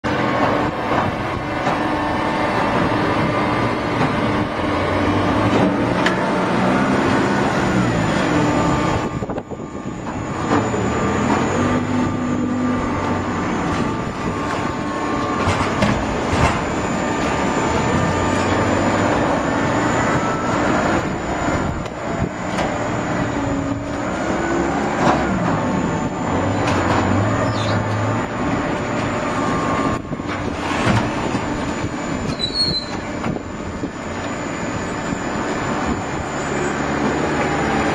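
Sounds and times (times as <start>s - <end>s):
baler mechanical drone: 0.0s - 37.9s
creaks and squeals: 22.4s - 28.4s, 30.6s - 37.9s.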